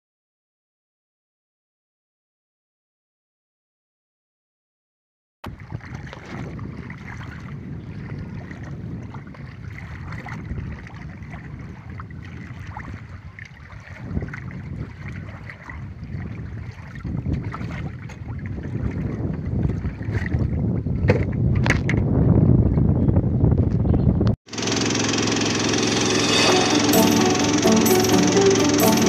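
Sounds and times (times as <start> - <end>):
water lapping against boat: 5.5 - 21.6
wind buffeting microphone: 5.5 - 24.4.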